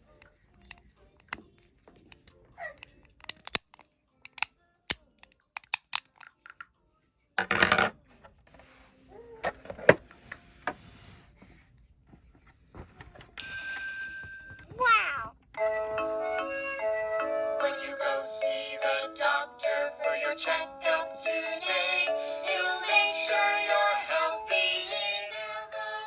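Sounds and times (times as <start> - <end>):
plastic toy pieces clicking: 2.1 - 6.6.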